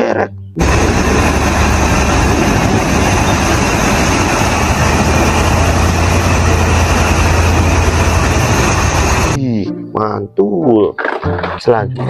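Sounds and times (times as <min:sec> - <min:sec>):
truck engine running: 0:00.6 - 0:09.4.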